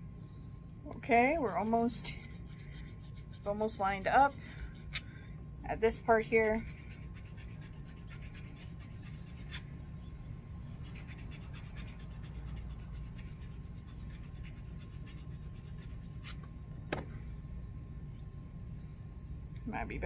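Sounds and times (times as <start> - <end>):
nail file rasping: 1.5 - 5.0, 6.6 - 9.6, 10.7 - 16.4.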